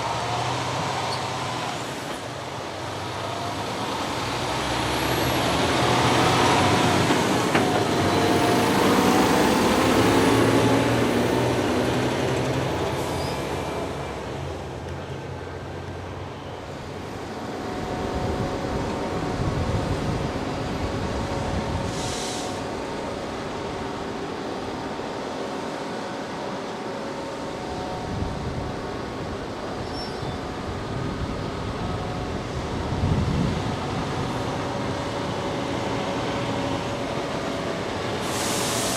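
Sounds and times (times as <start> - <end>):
brief hiss: 21.9 - 22.6, 38.2 - 38.9.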